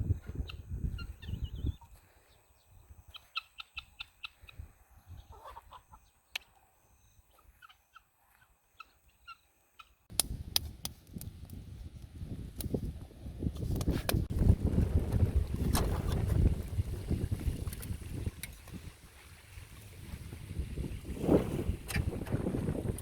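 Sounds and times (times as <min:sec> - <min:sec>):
wind rumbling on microphone: 0:00.0 - 0:02.0, 0:10.1 - 0:23.0.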